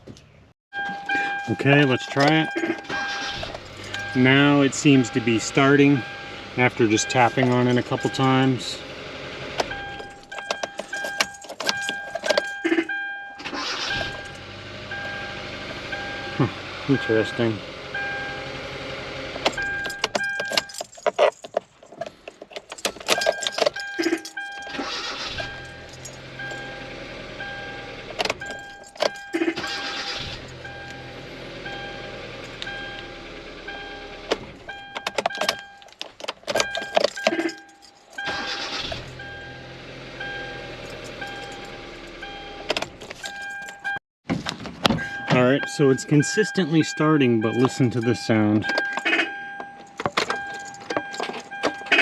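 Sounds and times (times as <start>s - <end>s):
warning chime beeping: 0.7s - 8.9s, 9.7s - 18.6s, 19.5s - 20.8s, 23.1s - 35.9s, 36.6s - 42.7s, 45.0s - 52.0s
engine cranking: 0.8s - 52.0s
car engine running: 1.0s - 52.0s.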